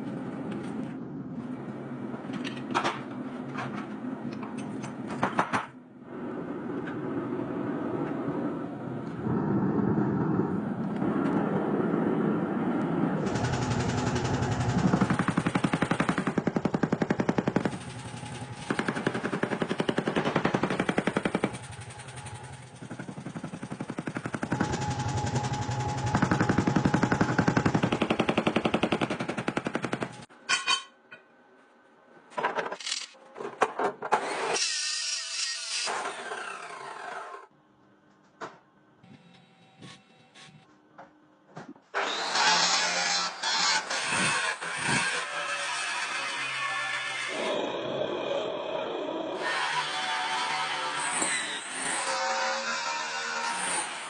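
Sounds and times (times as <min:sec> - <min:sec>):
power hammer blows: 0:13.3 - 0:30.3.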